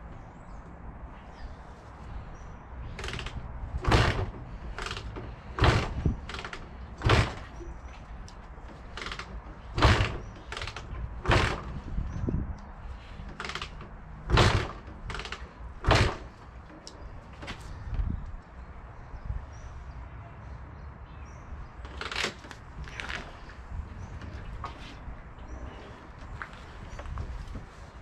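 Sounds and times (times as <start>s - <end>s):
motorcycle kick-start thumps: 13.4s - 16.3s.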